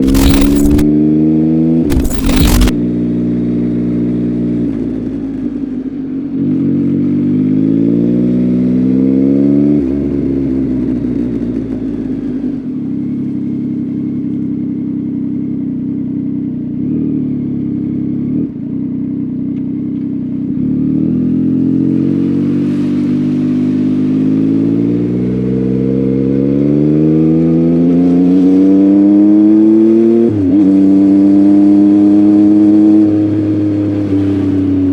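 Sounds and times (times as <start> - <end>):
motorcycle engine revving: 0.0 - 0.9, 1.9 - 2.8.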